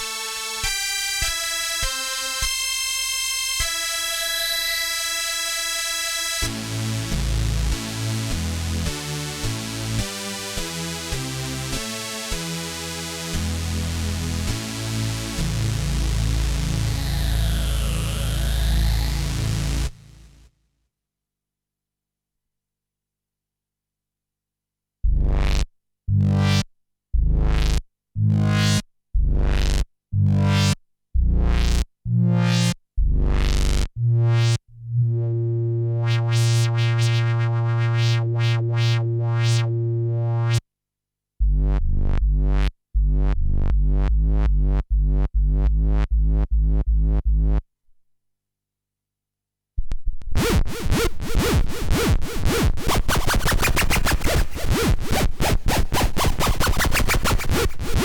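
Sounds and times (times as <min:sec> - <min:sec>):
synthesizer repeated notes: 0:00.0 - 0:12.1, 0:12.9 - 0:20.3, 0:29.6 - 0:40.6, 0:41.4 - 0:47.6, 0:50.4 - 0:58.0
synthesizer chords with heavy bass: 0:00.0 - 0:20.4, 0:25.1 - 0:26.6, 0:27.2 - 0:40.6, 0:41.4 - 0:47.6, 0:50.4 - 0:58.0
dense noisy synthesizer patch: 0:14.7 - 0:20.4, 0:32.4 - 0:34.6, 0:35.3 - 0:40.6, 0:50.4 - 0:58.0.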